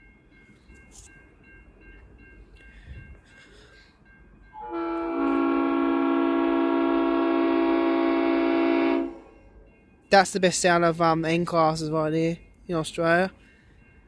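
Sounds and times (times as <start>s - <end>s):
locomotive air horn chord: 4.5s - 9.3s.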